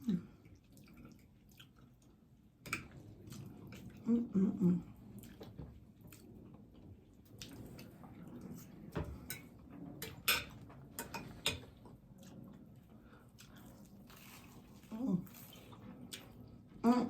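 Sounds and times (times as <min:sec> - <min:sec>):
chewing and mouth sounds: 0:00.3 - 0:04.1, 0:12.2 - 0:16.5.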